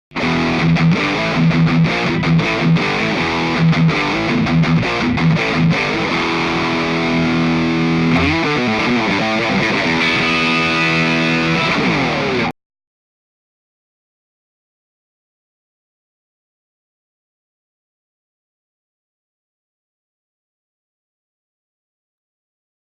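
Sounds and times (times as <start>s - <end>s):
electric guitar with driven tone: 0.1s - 12.6s.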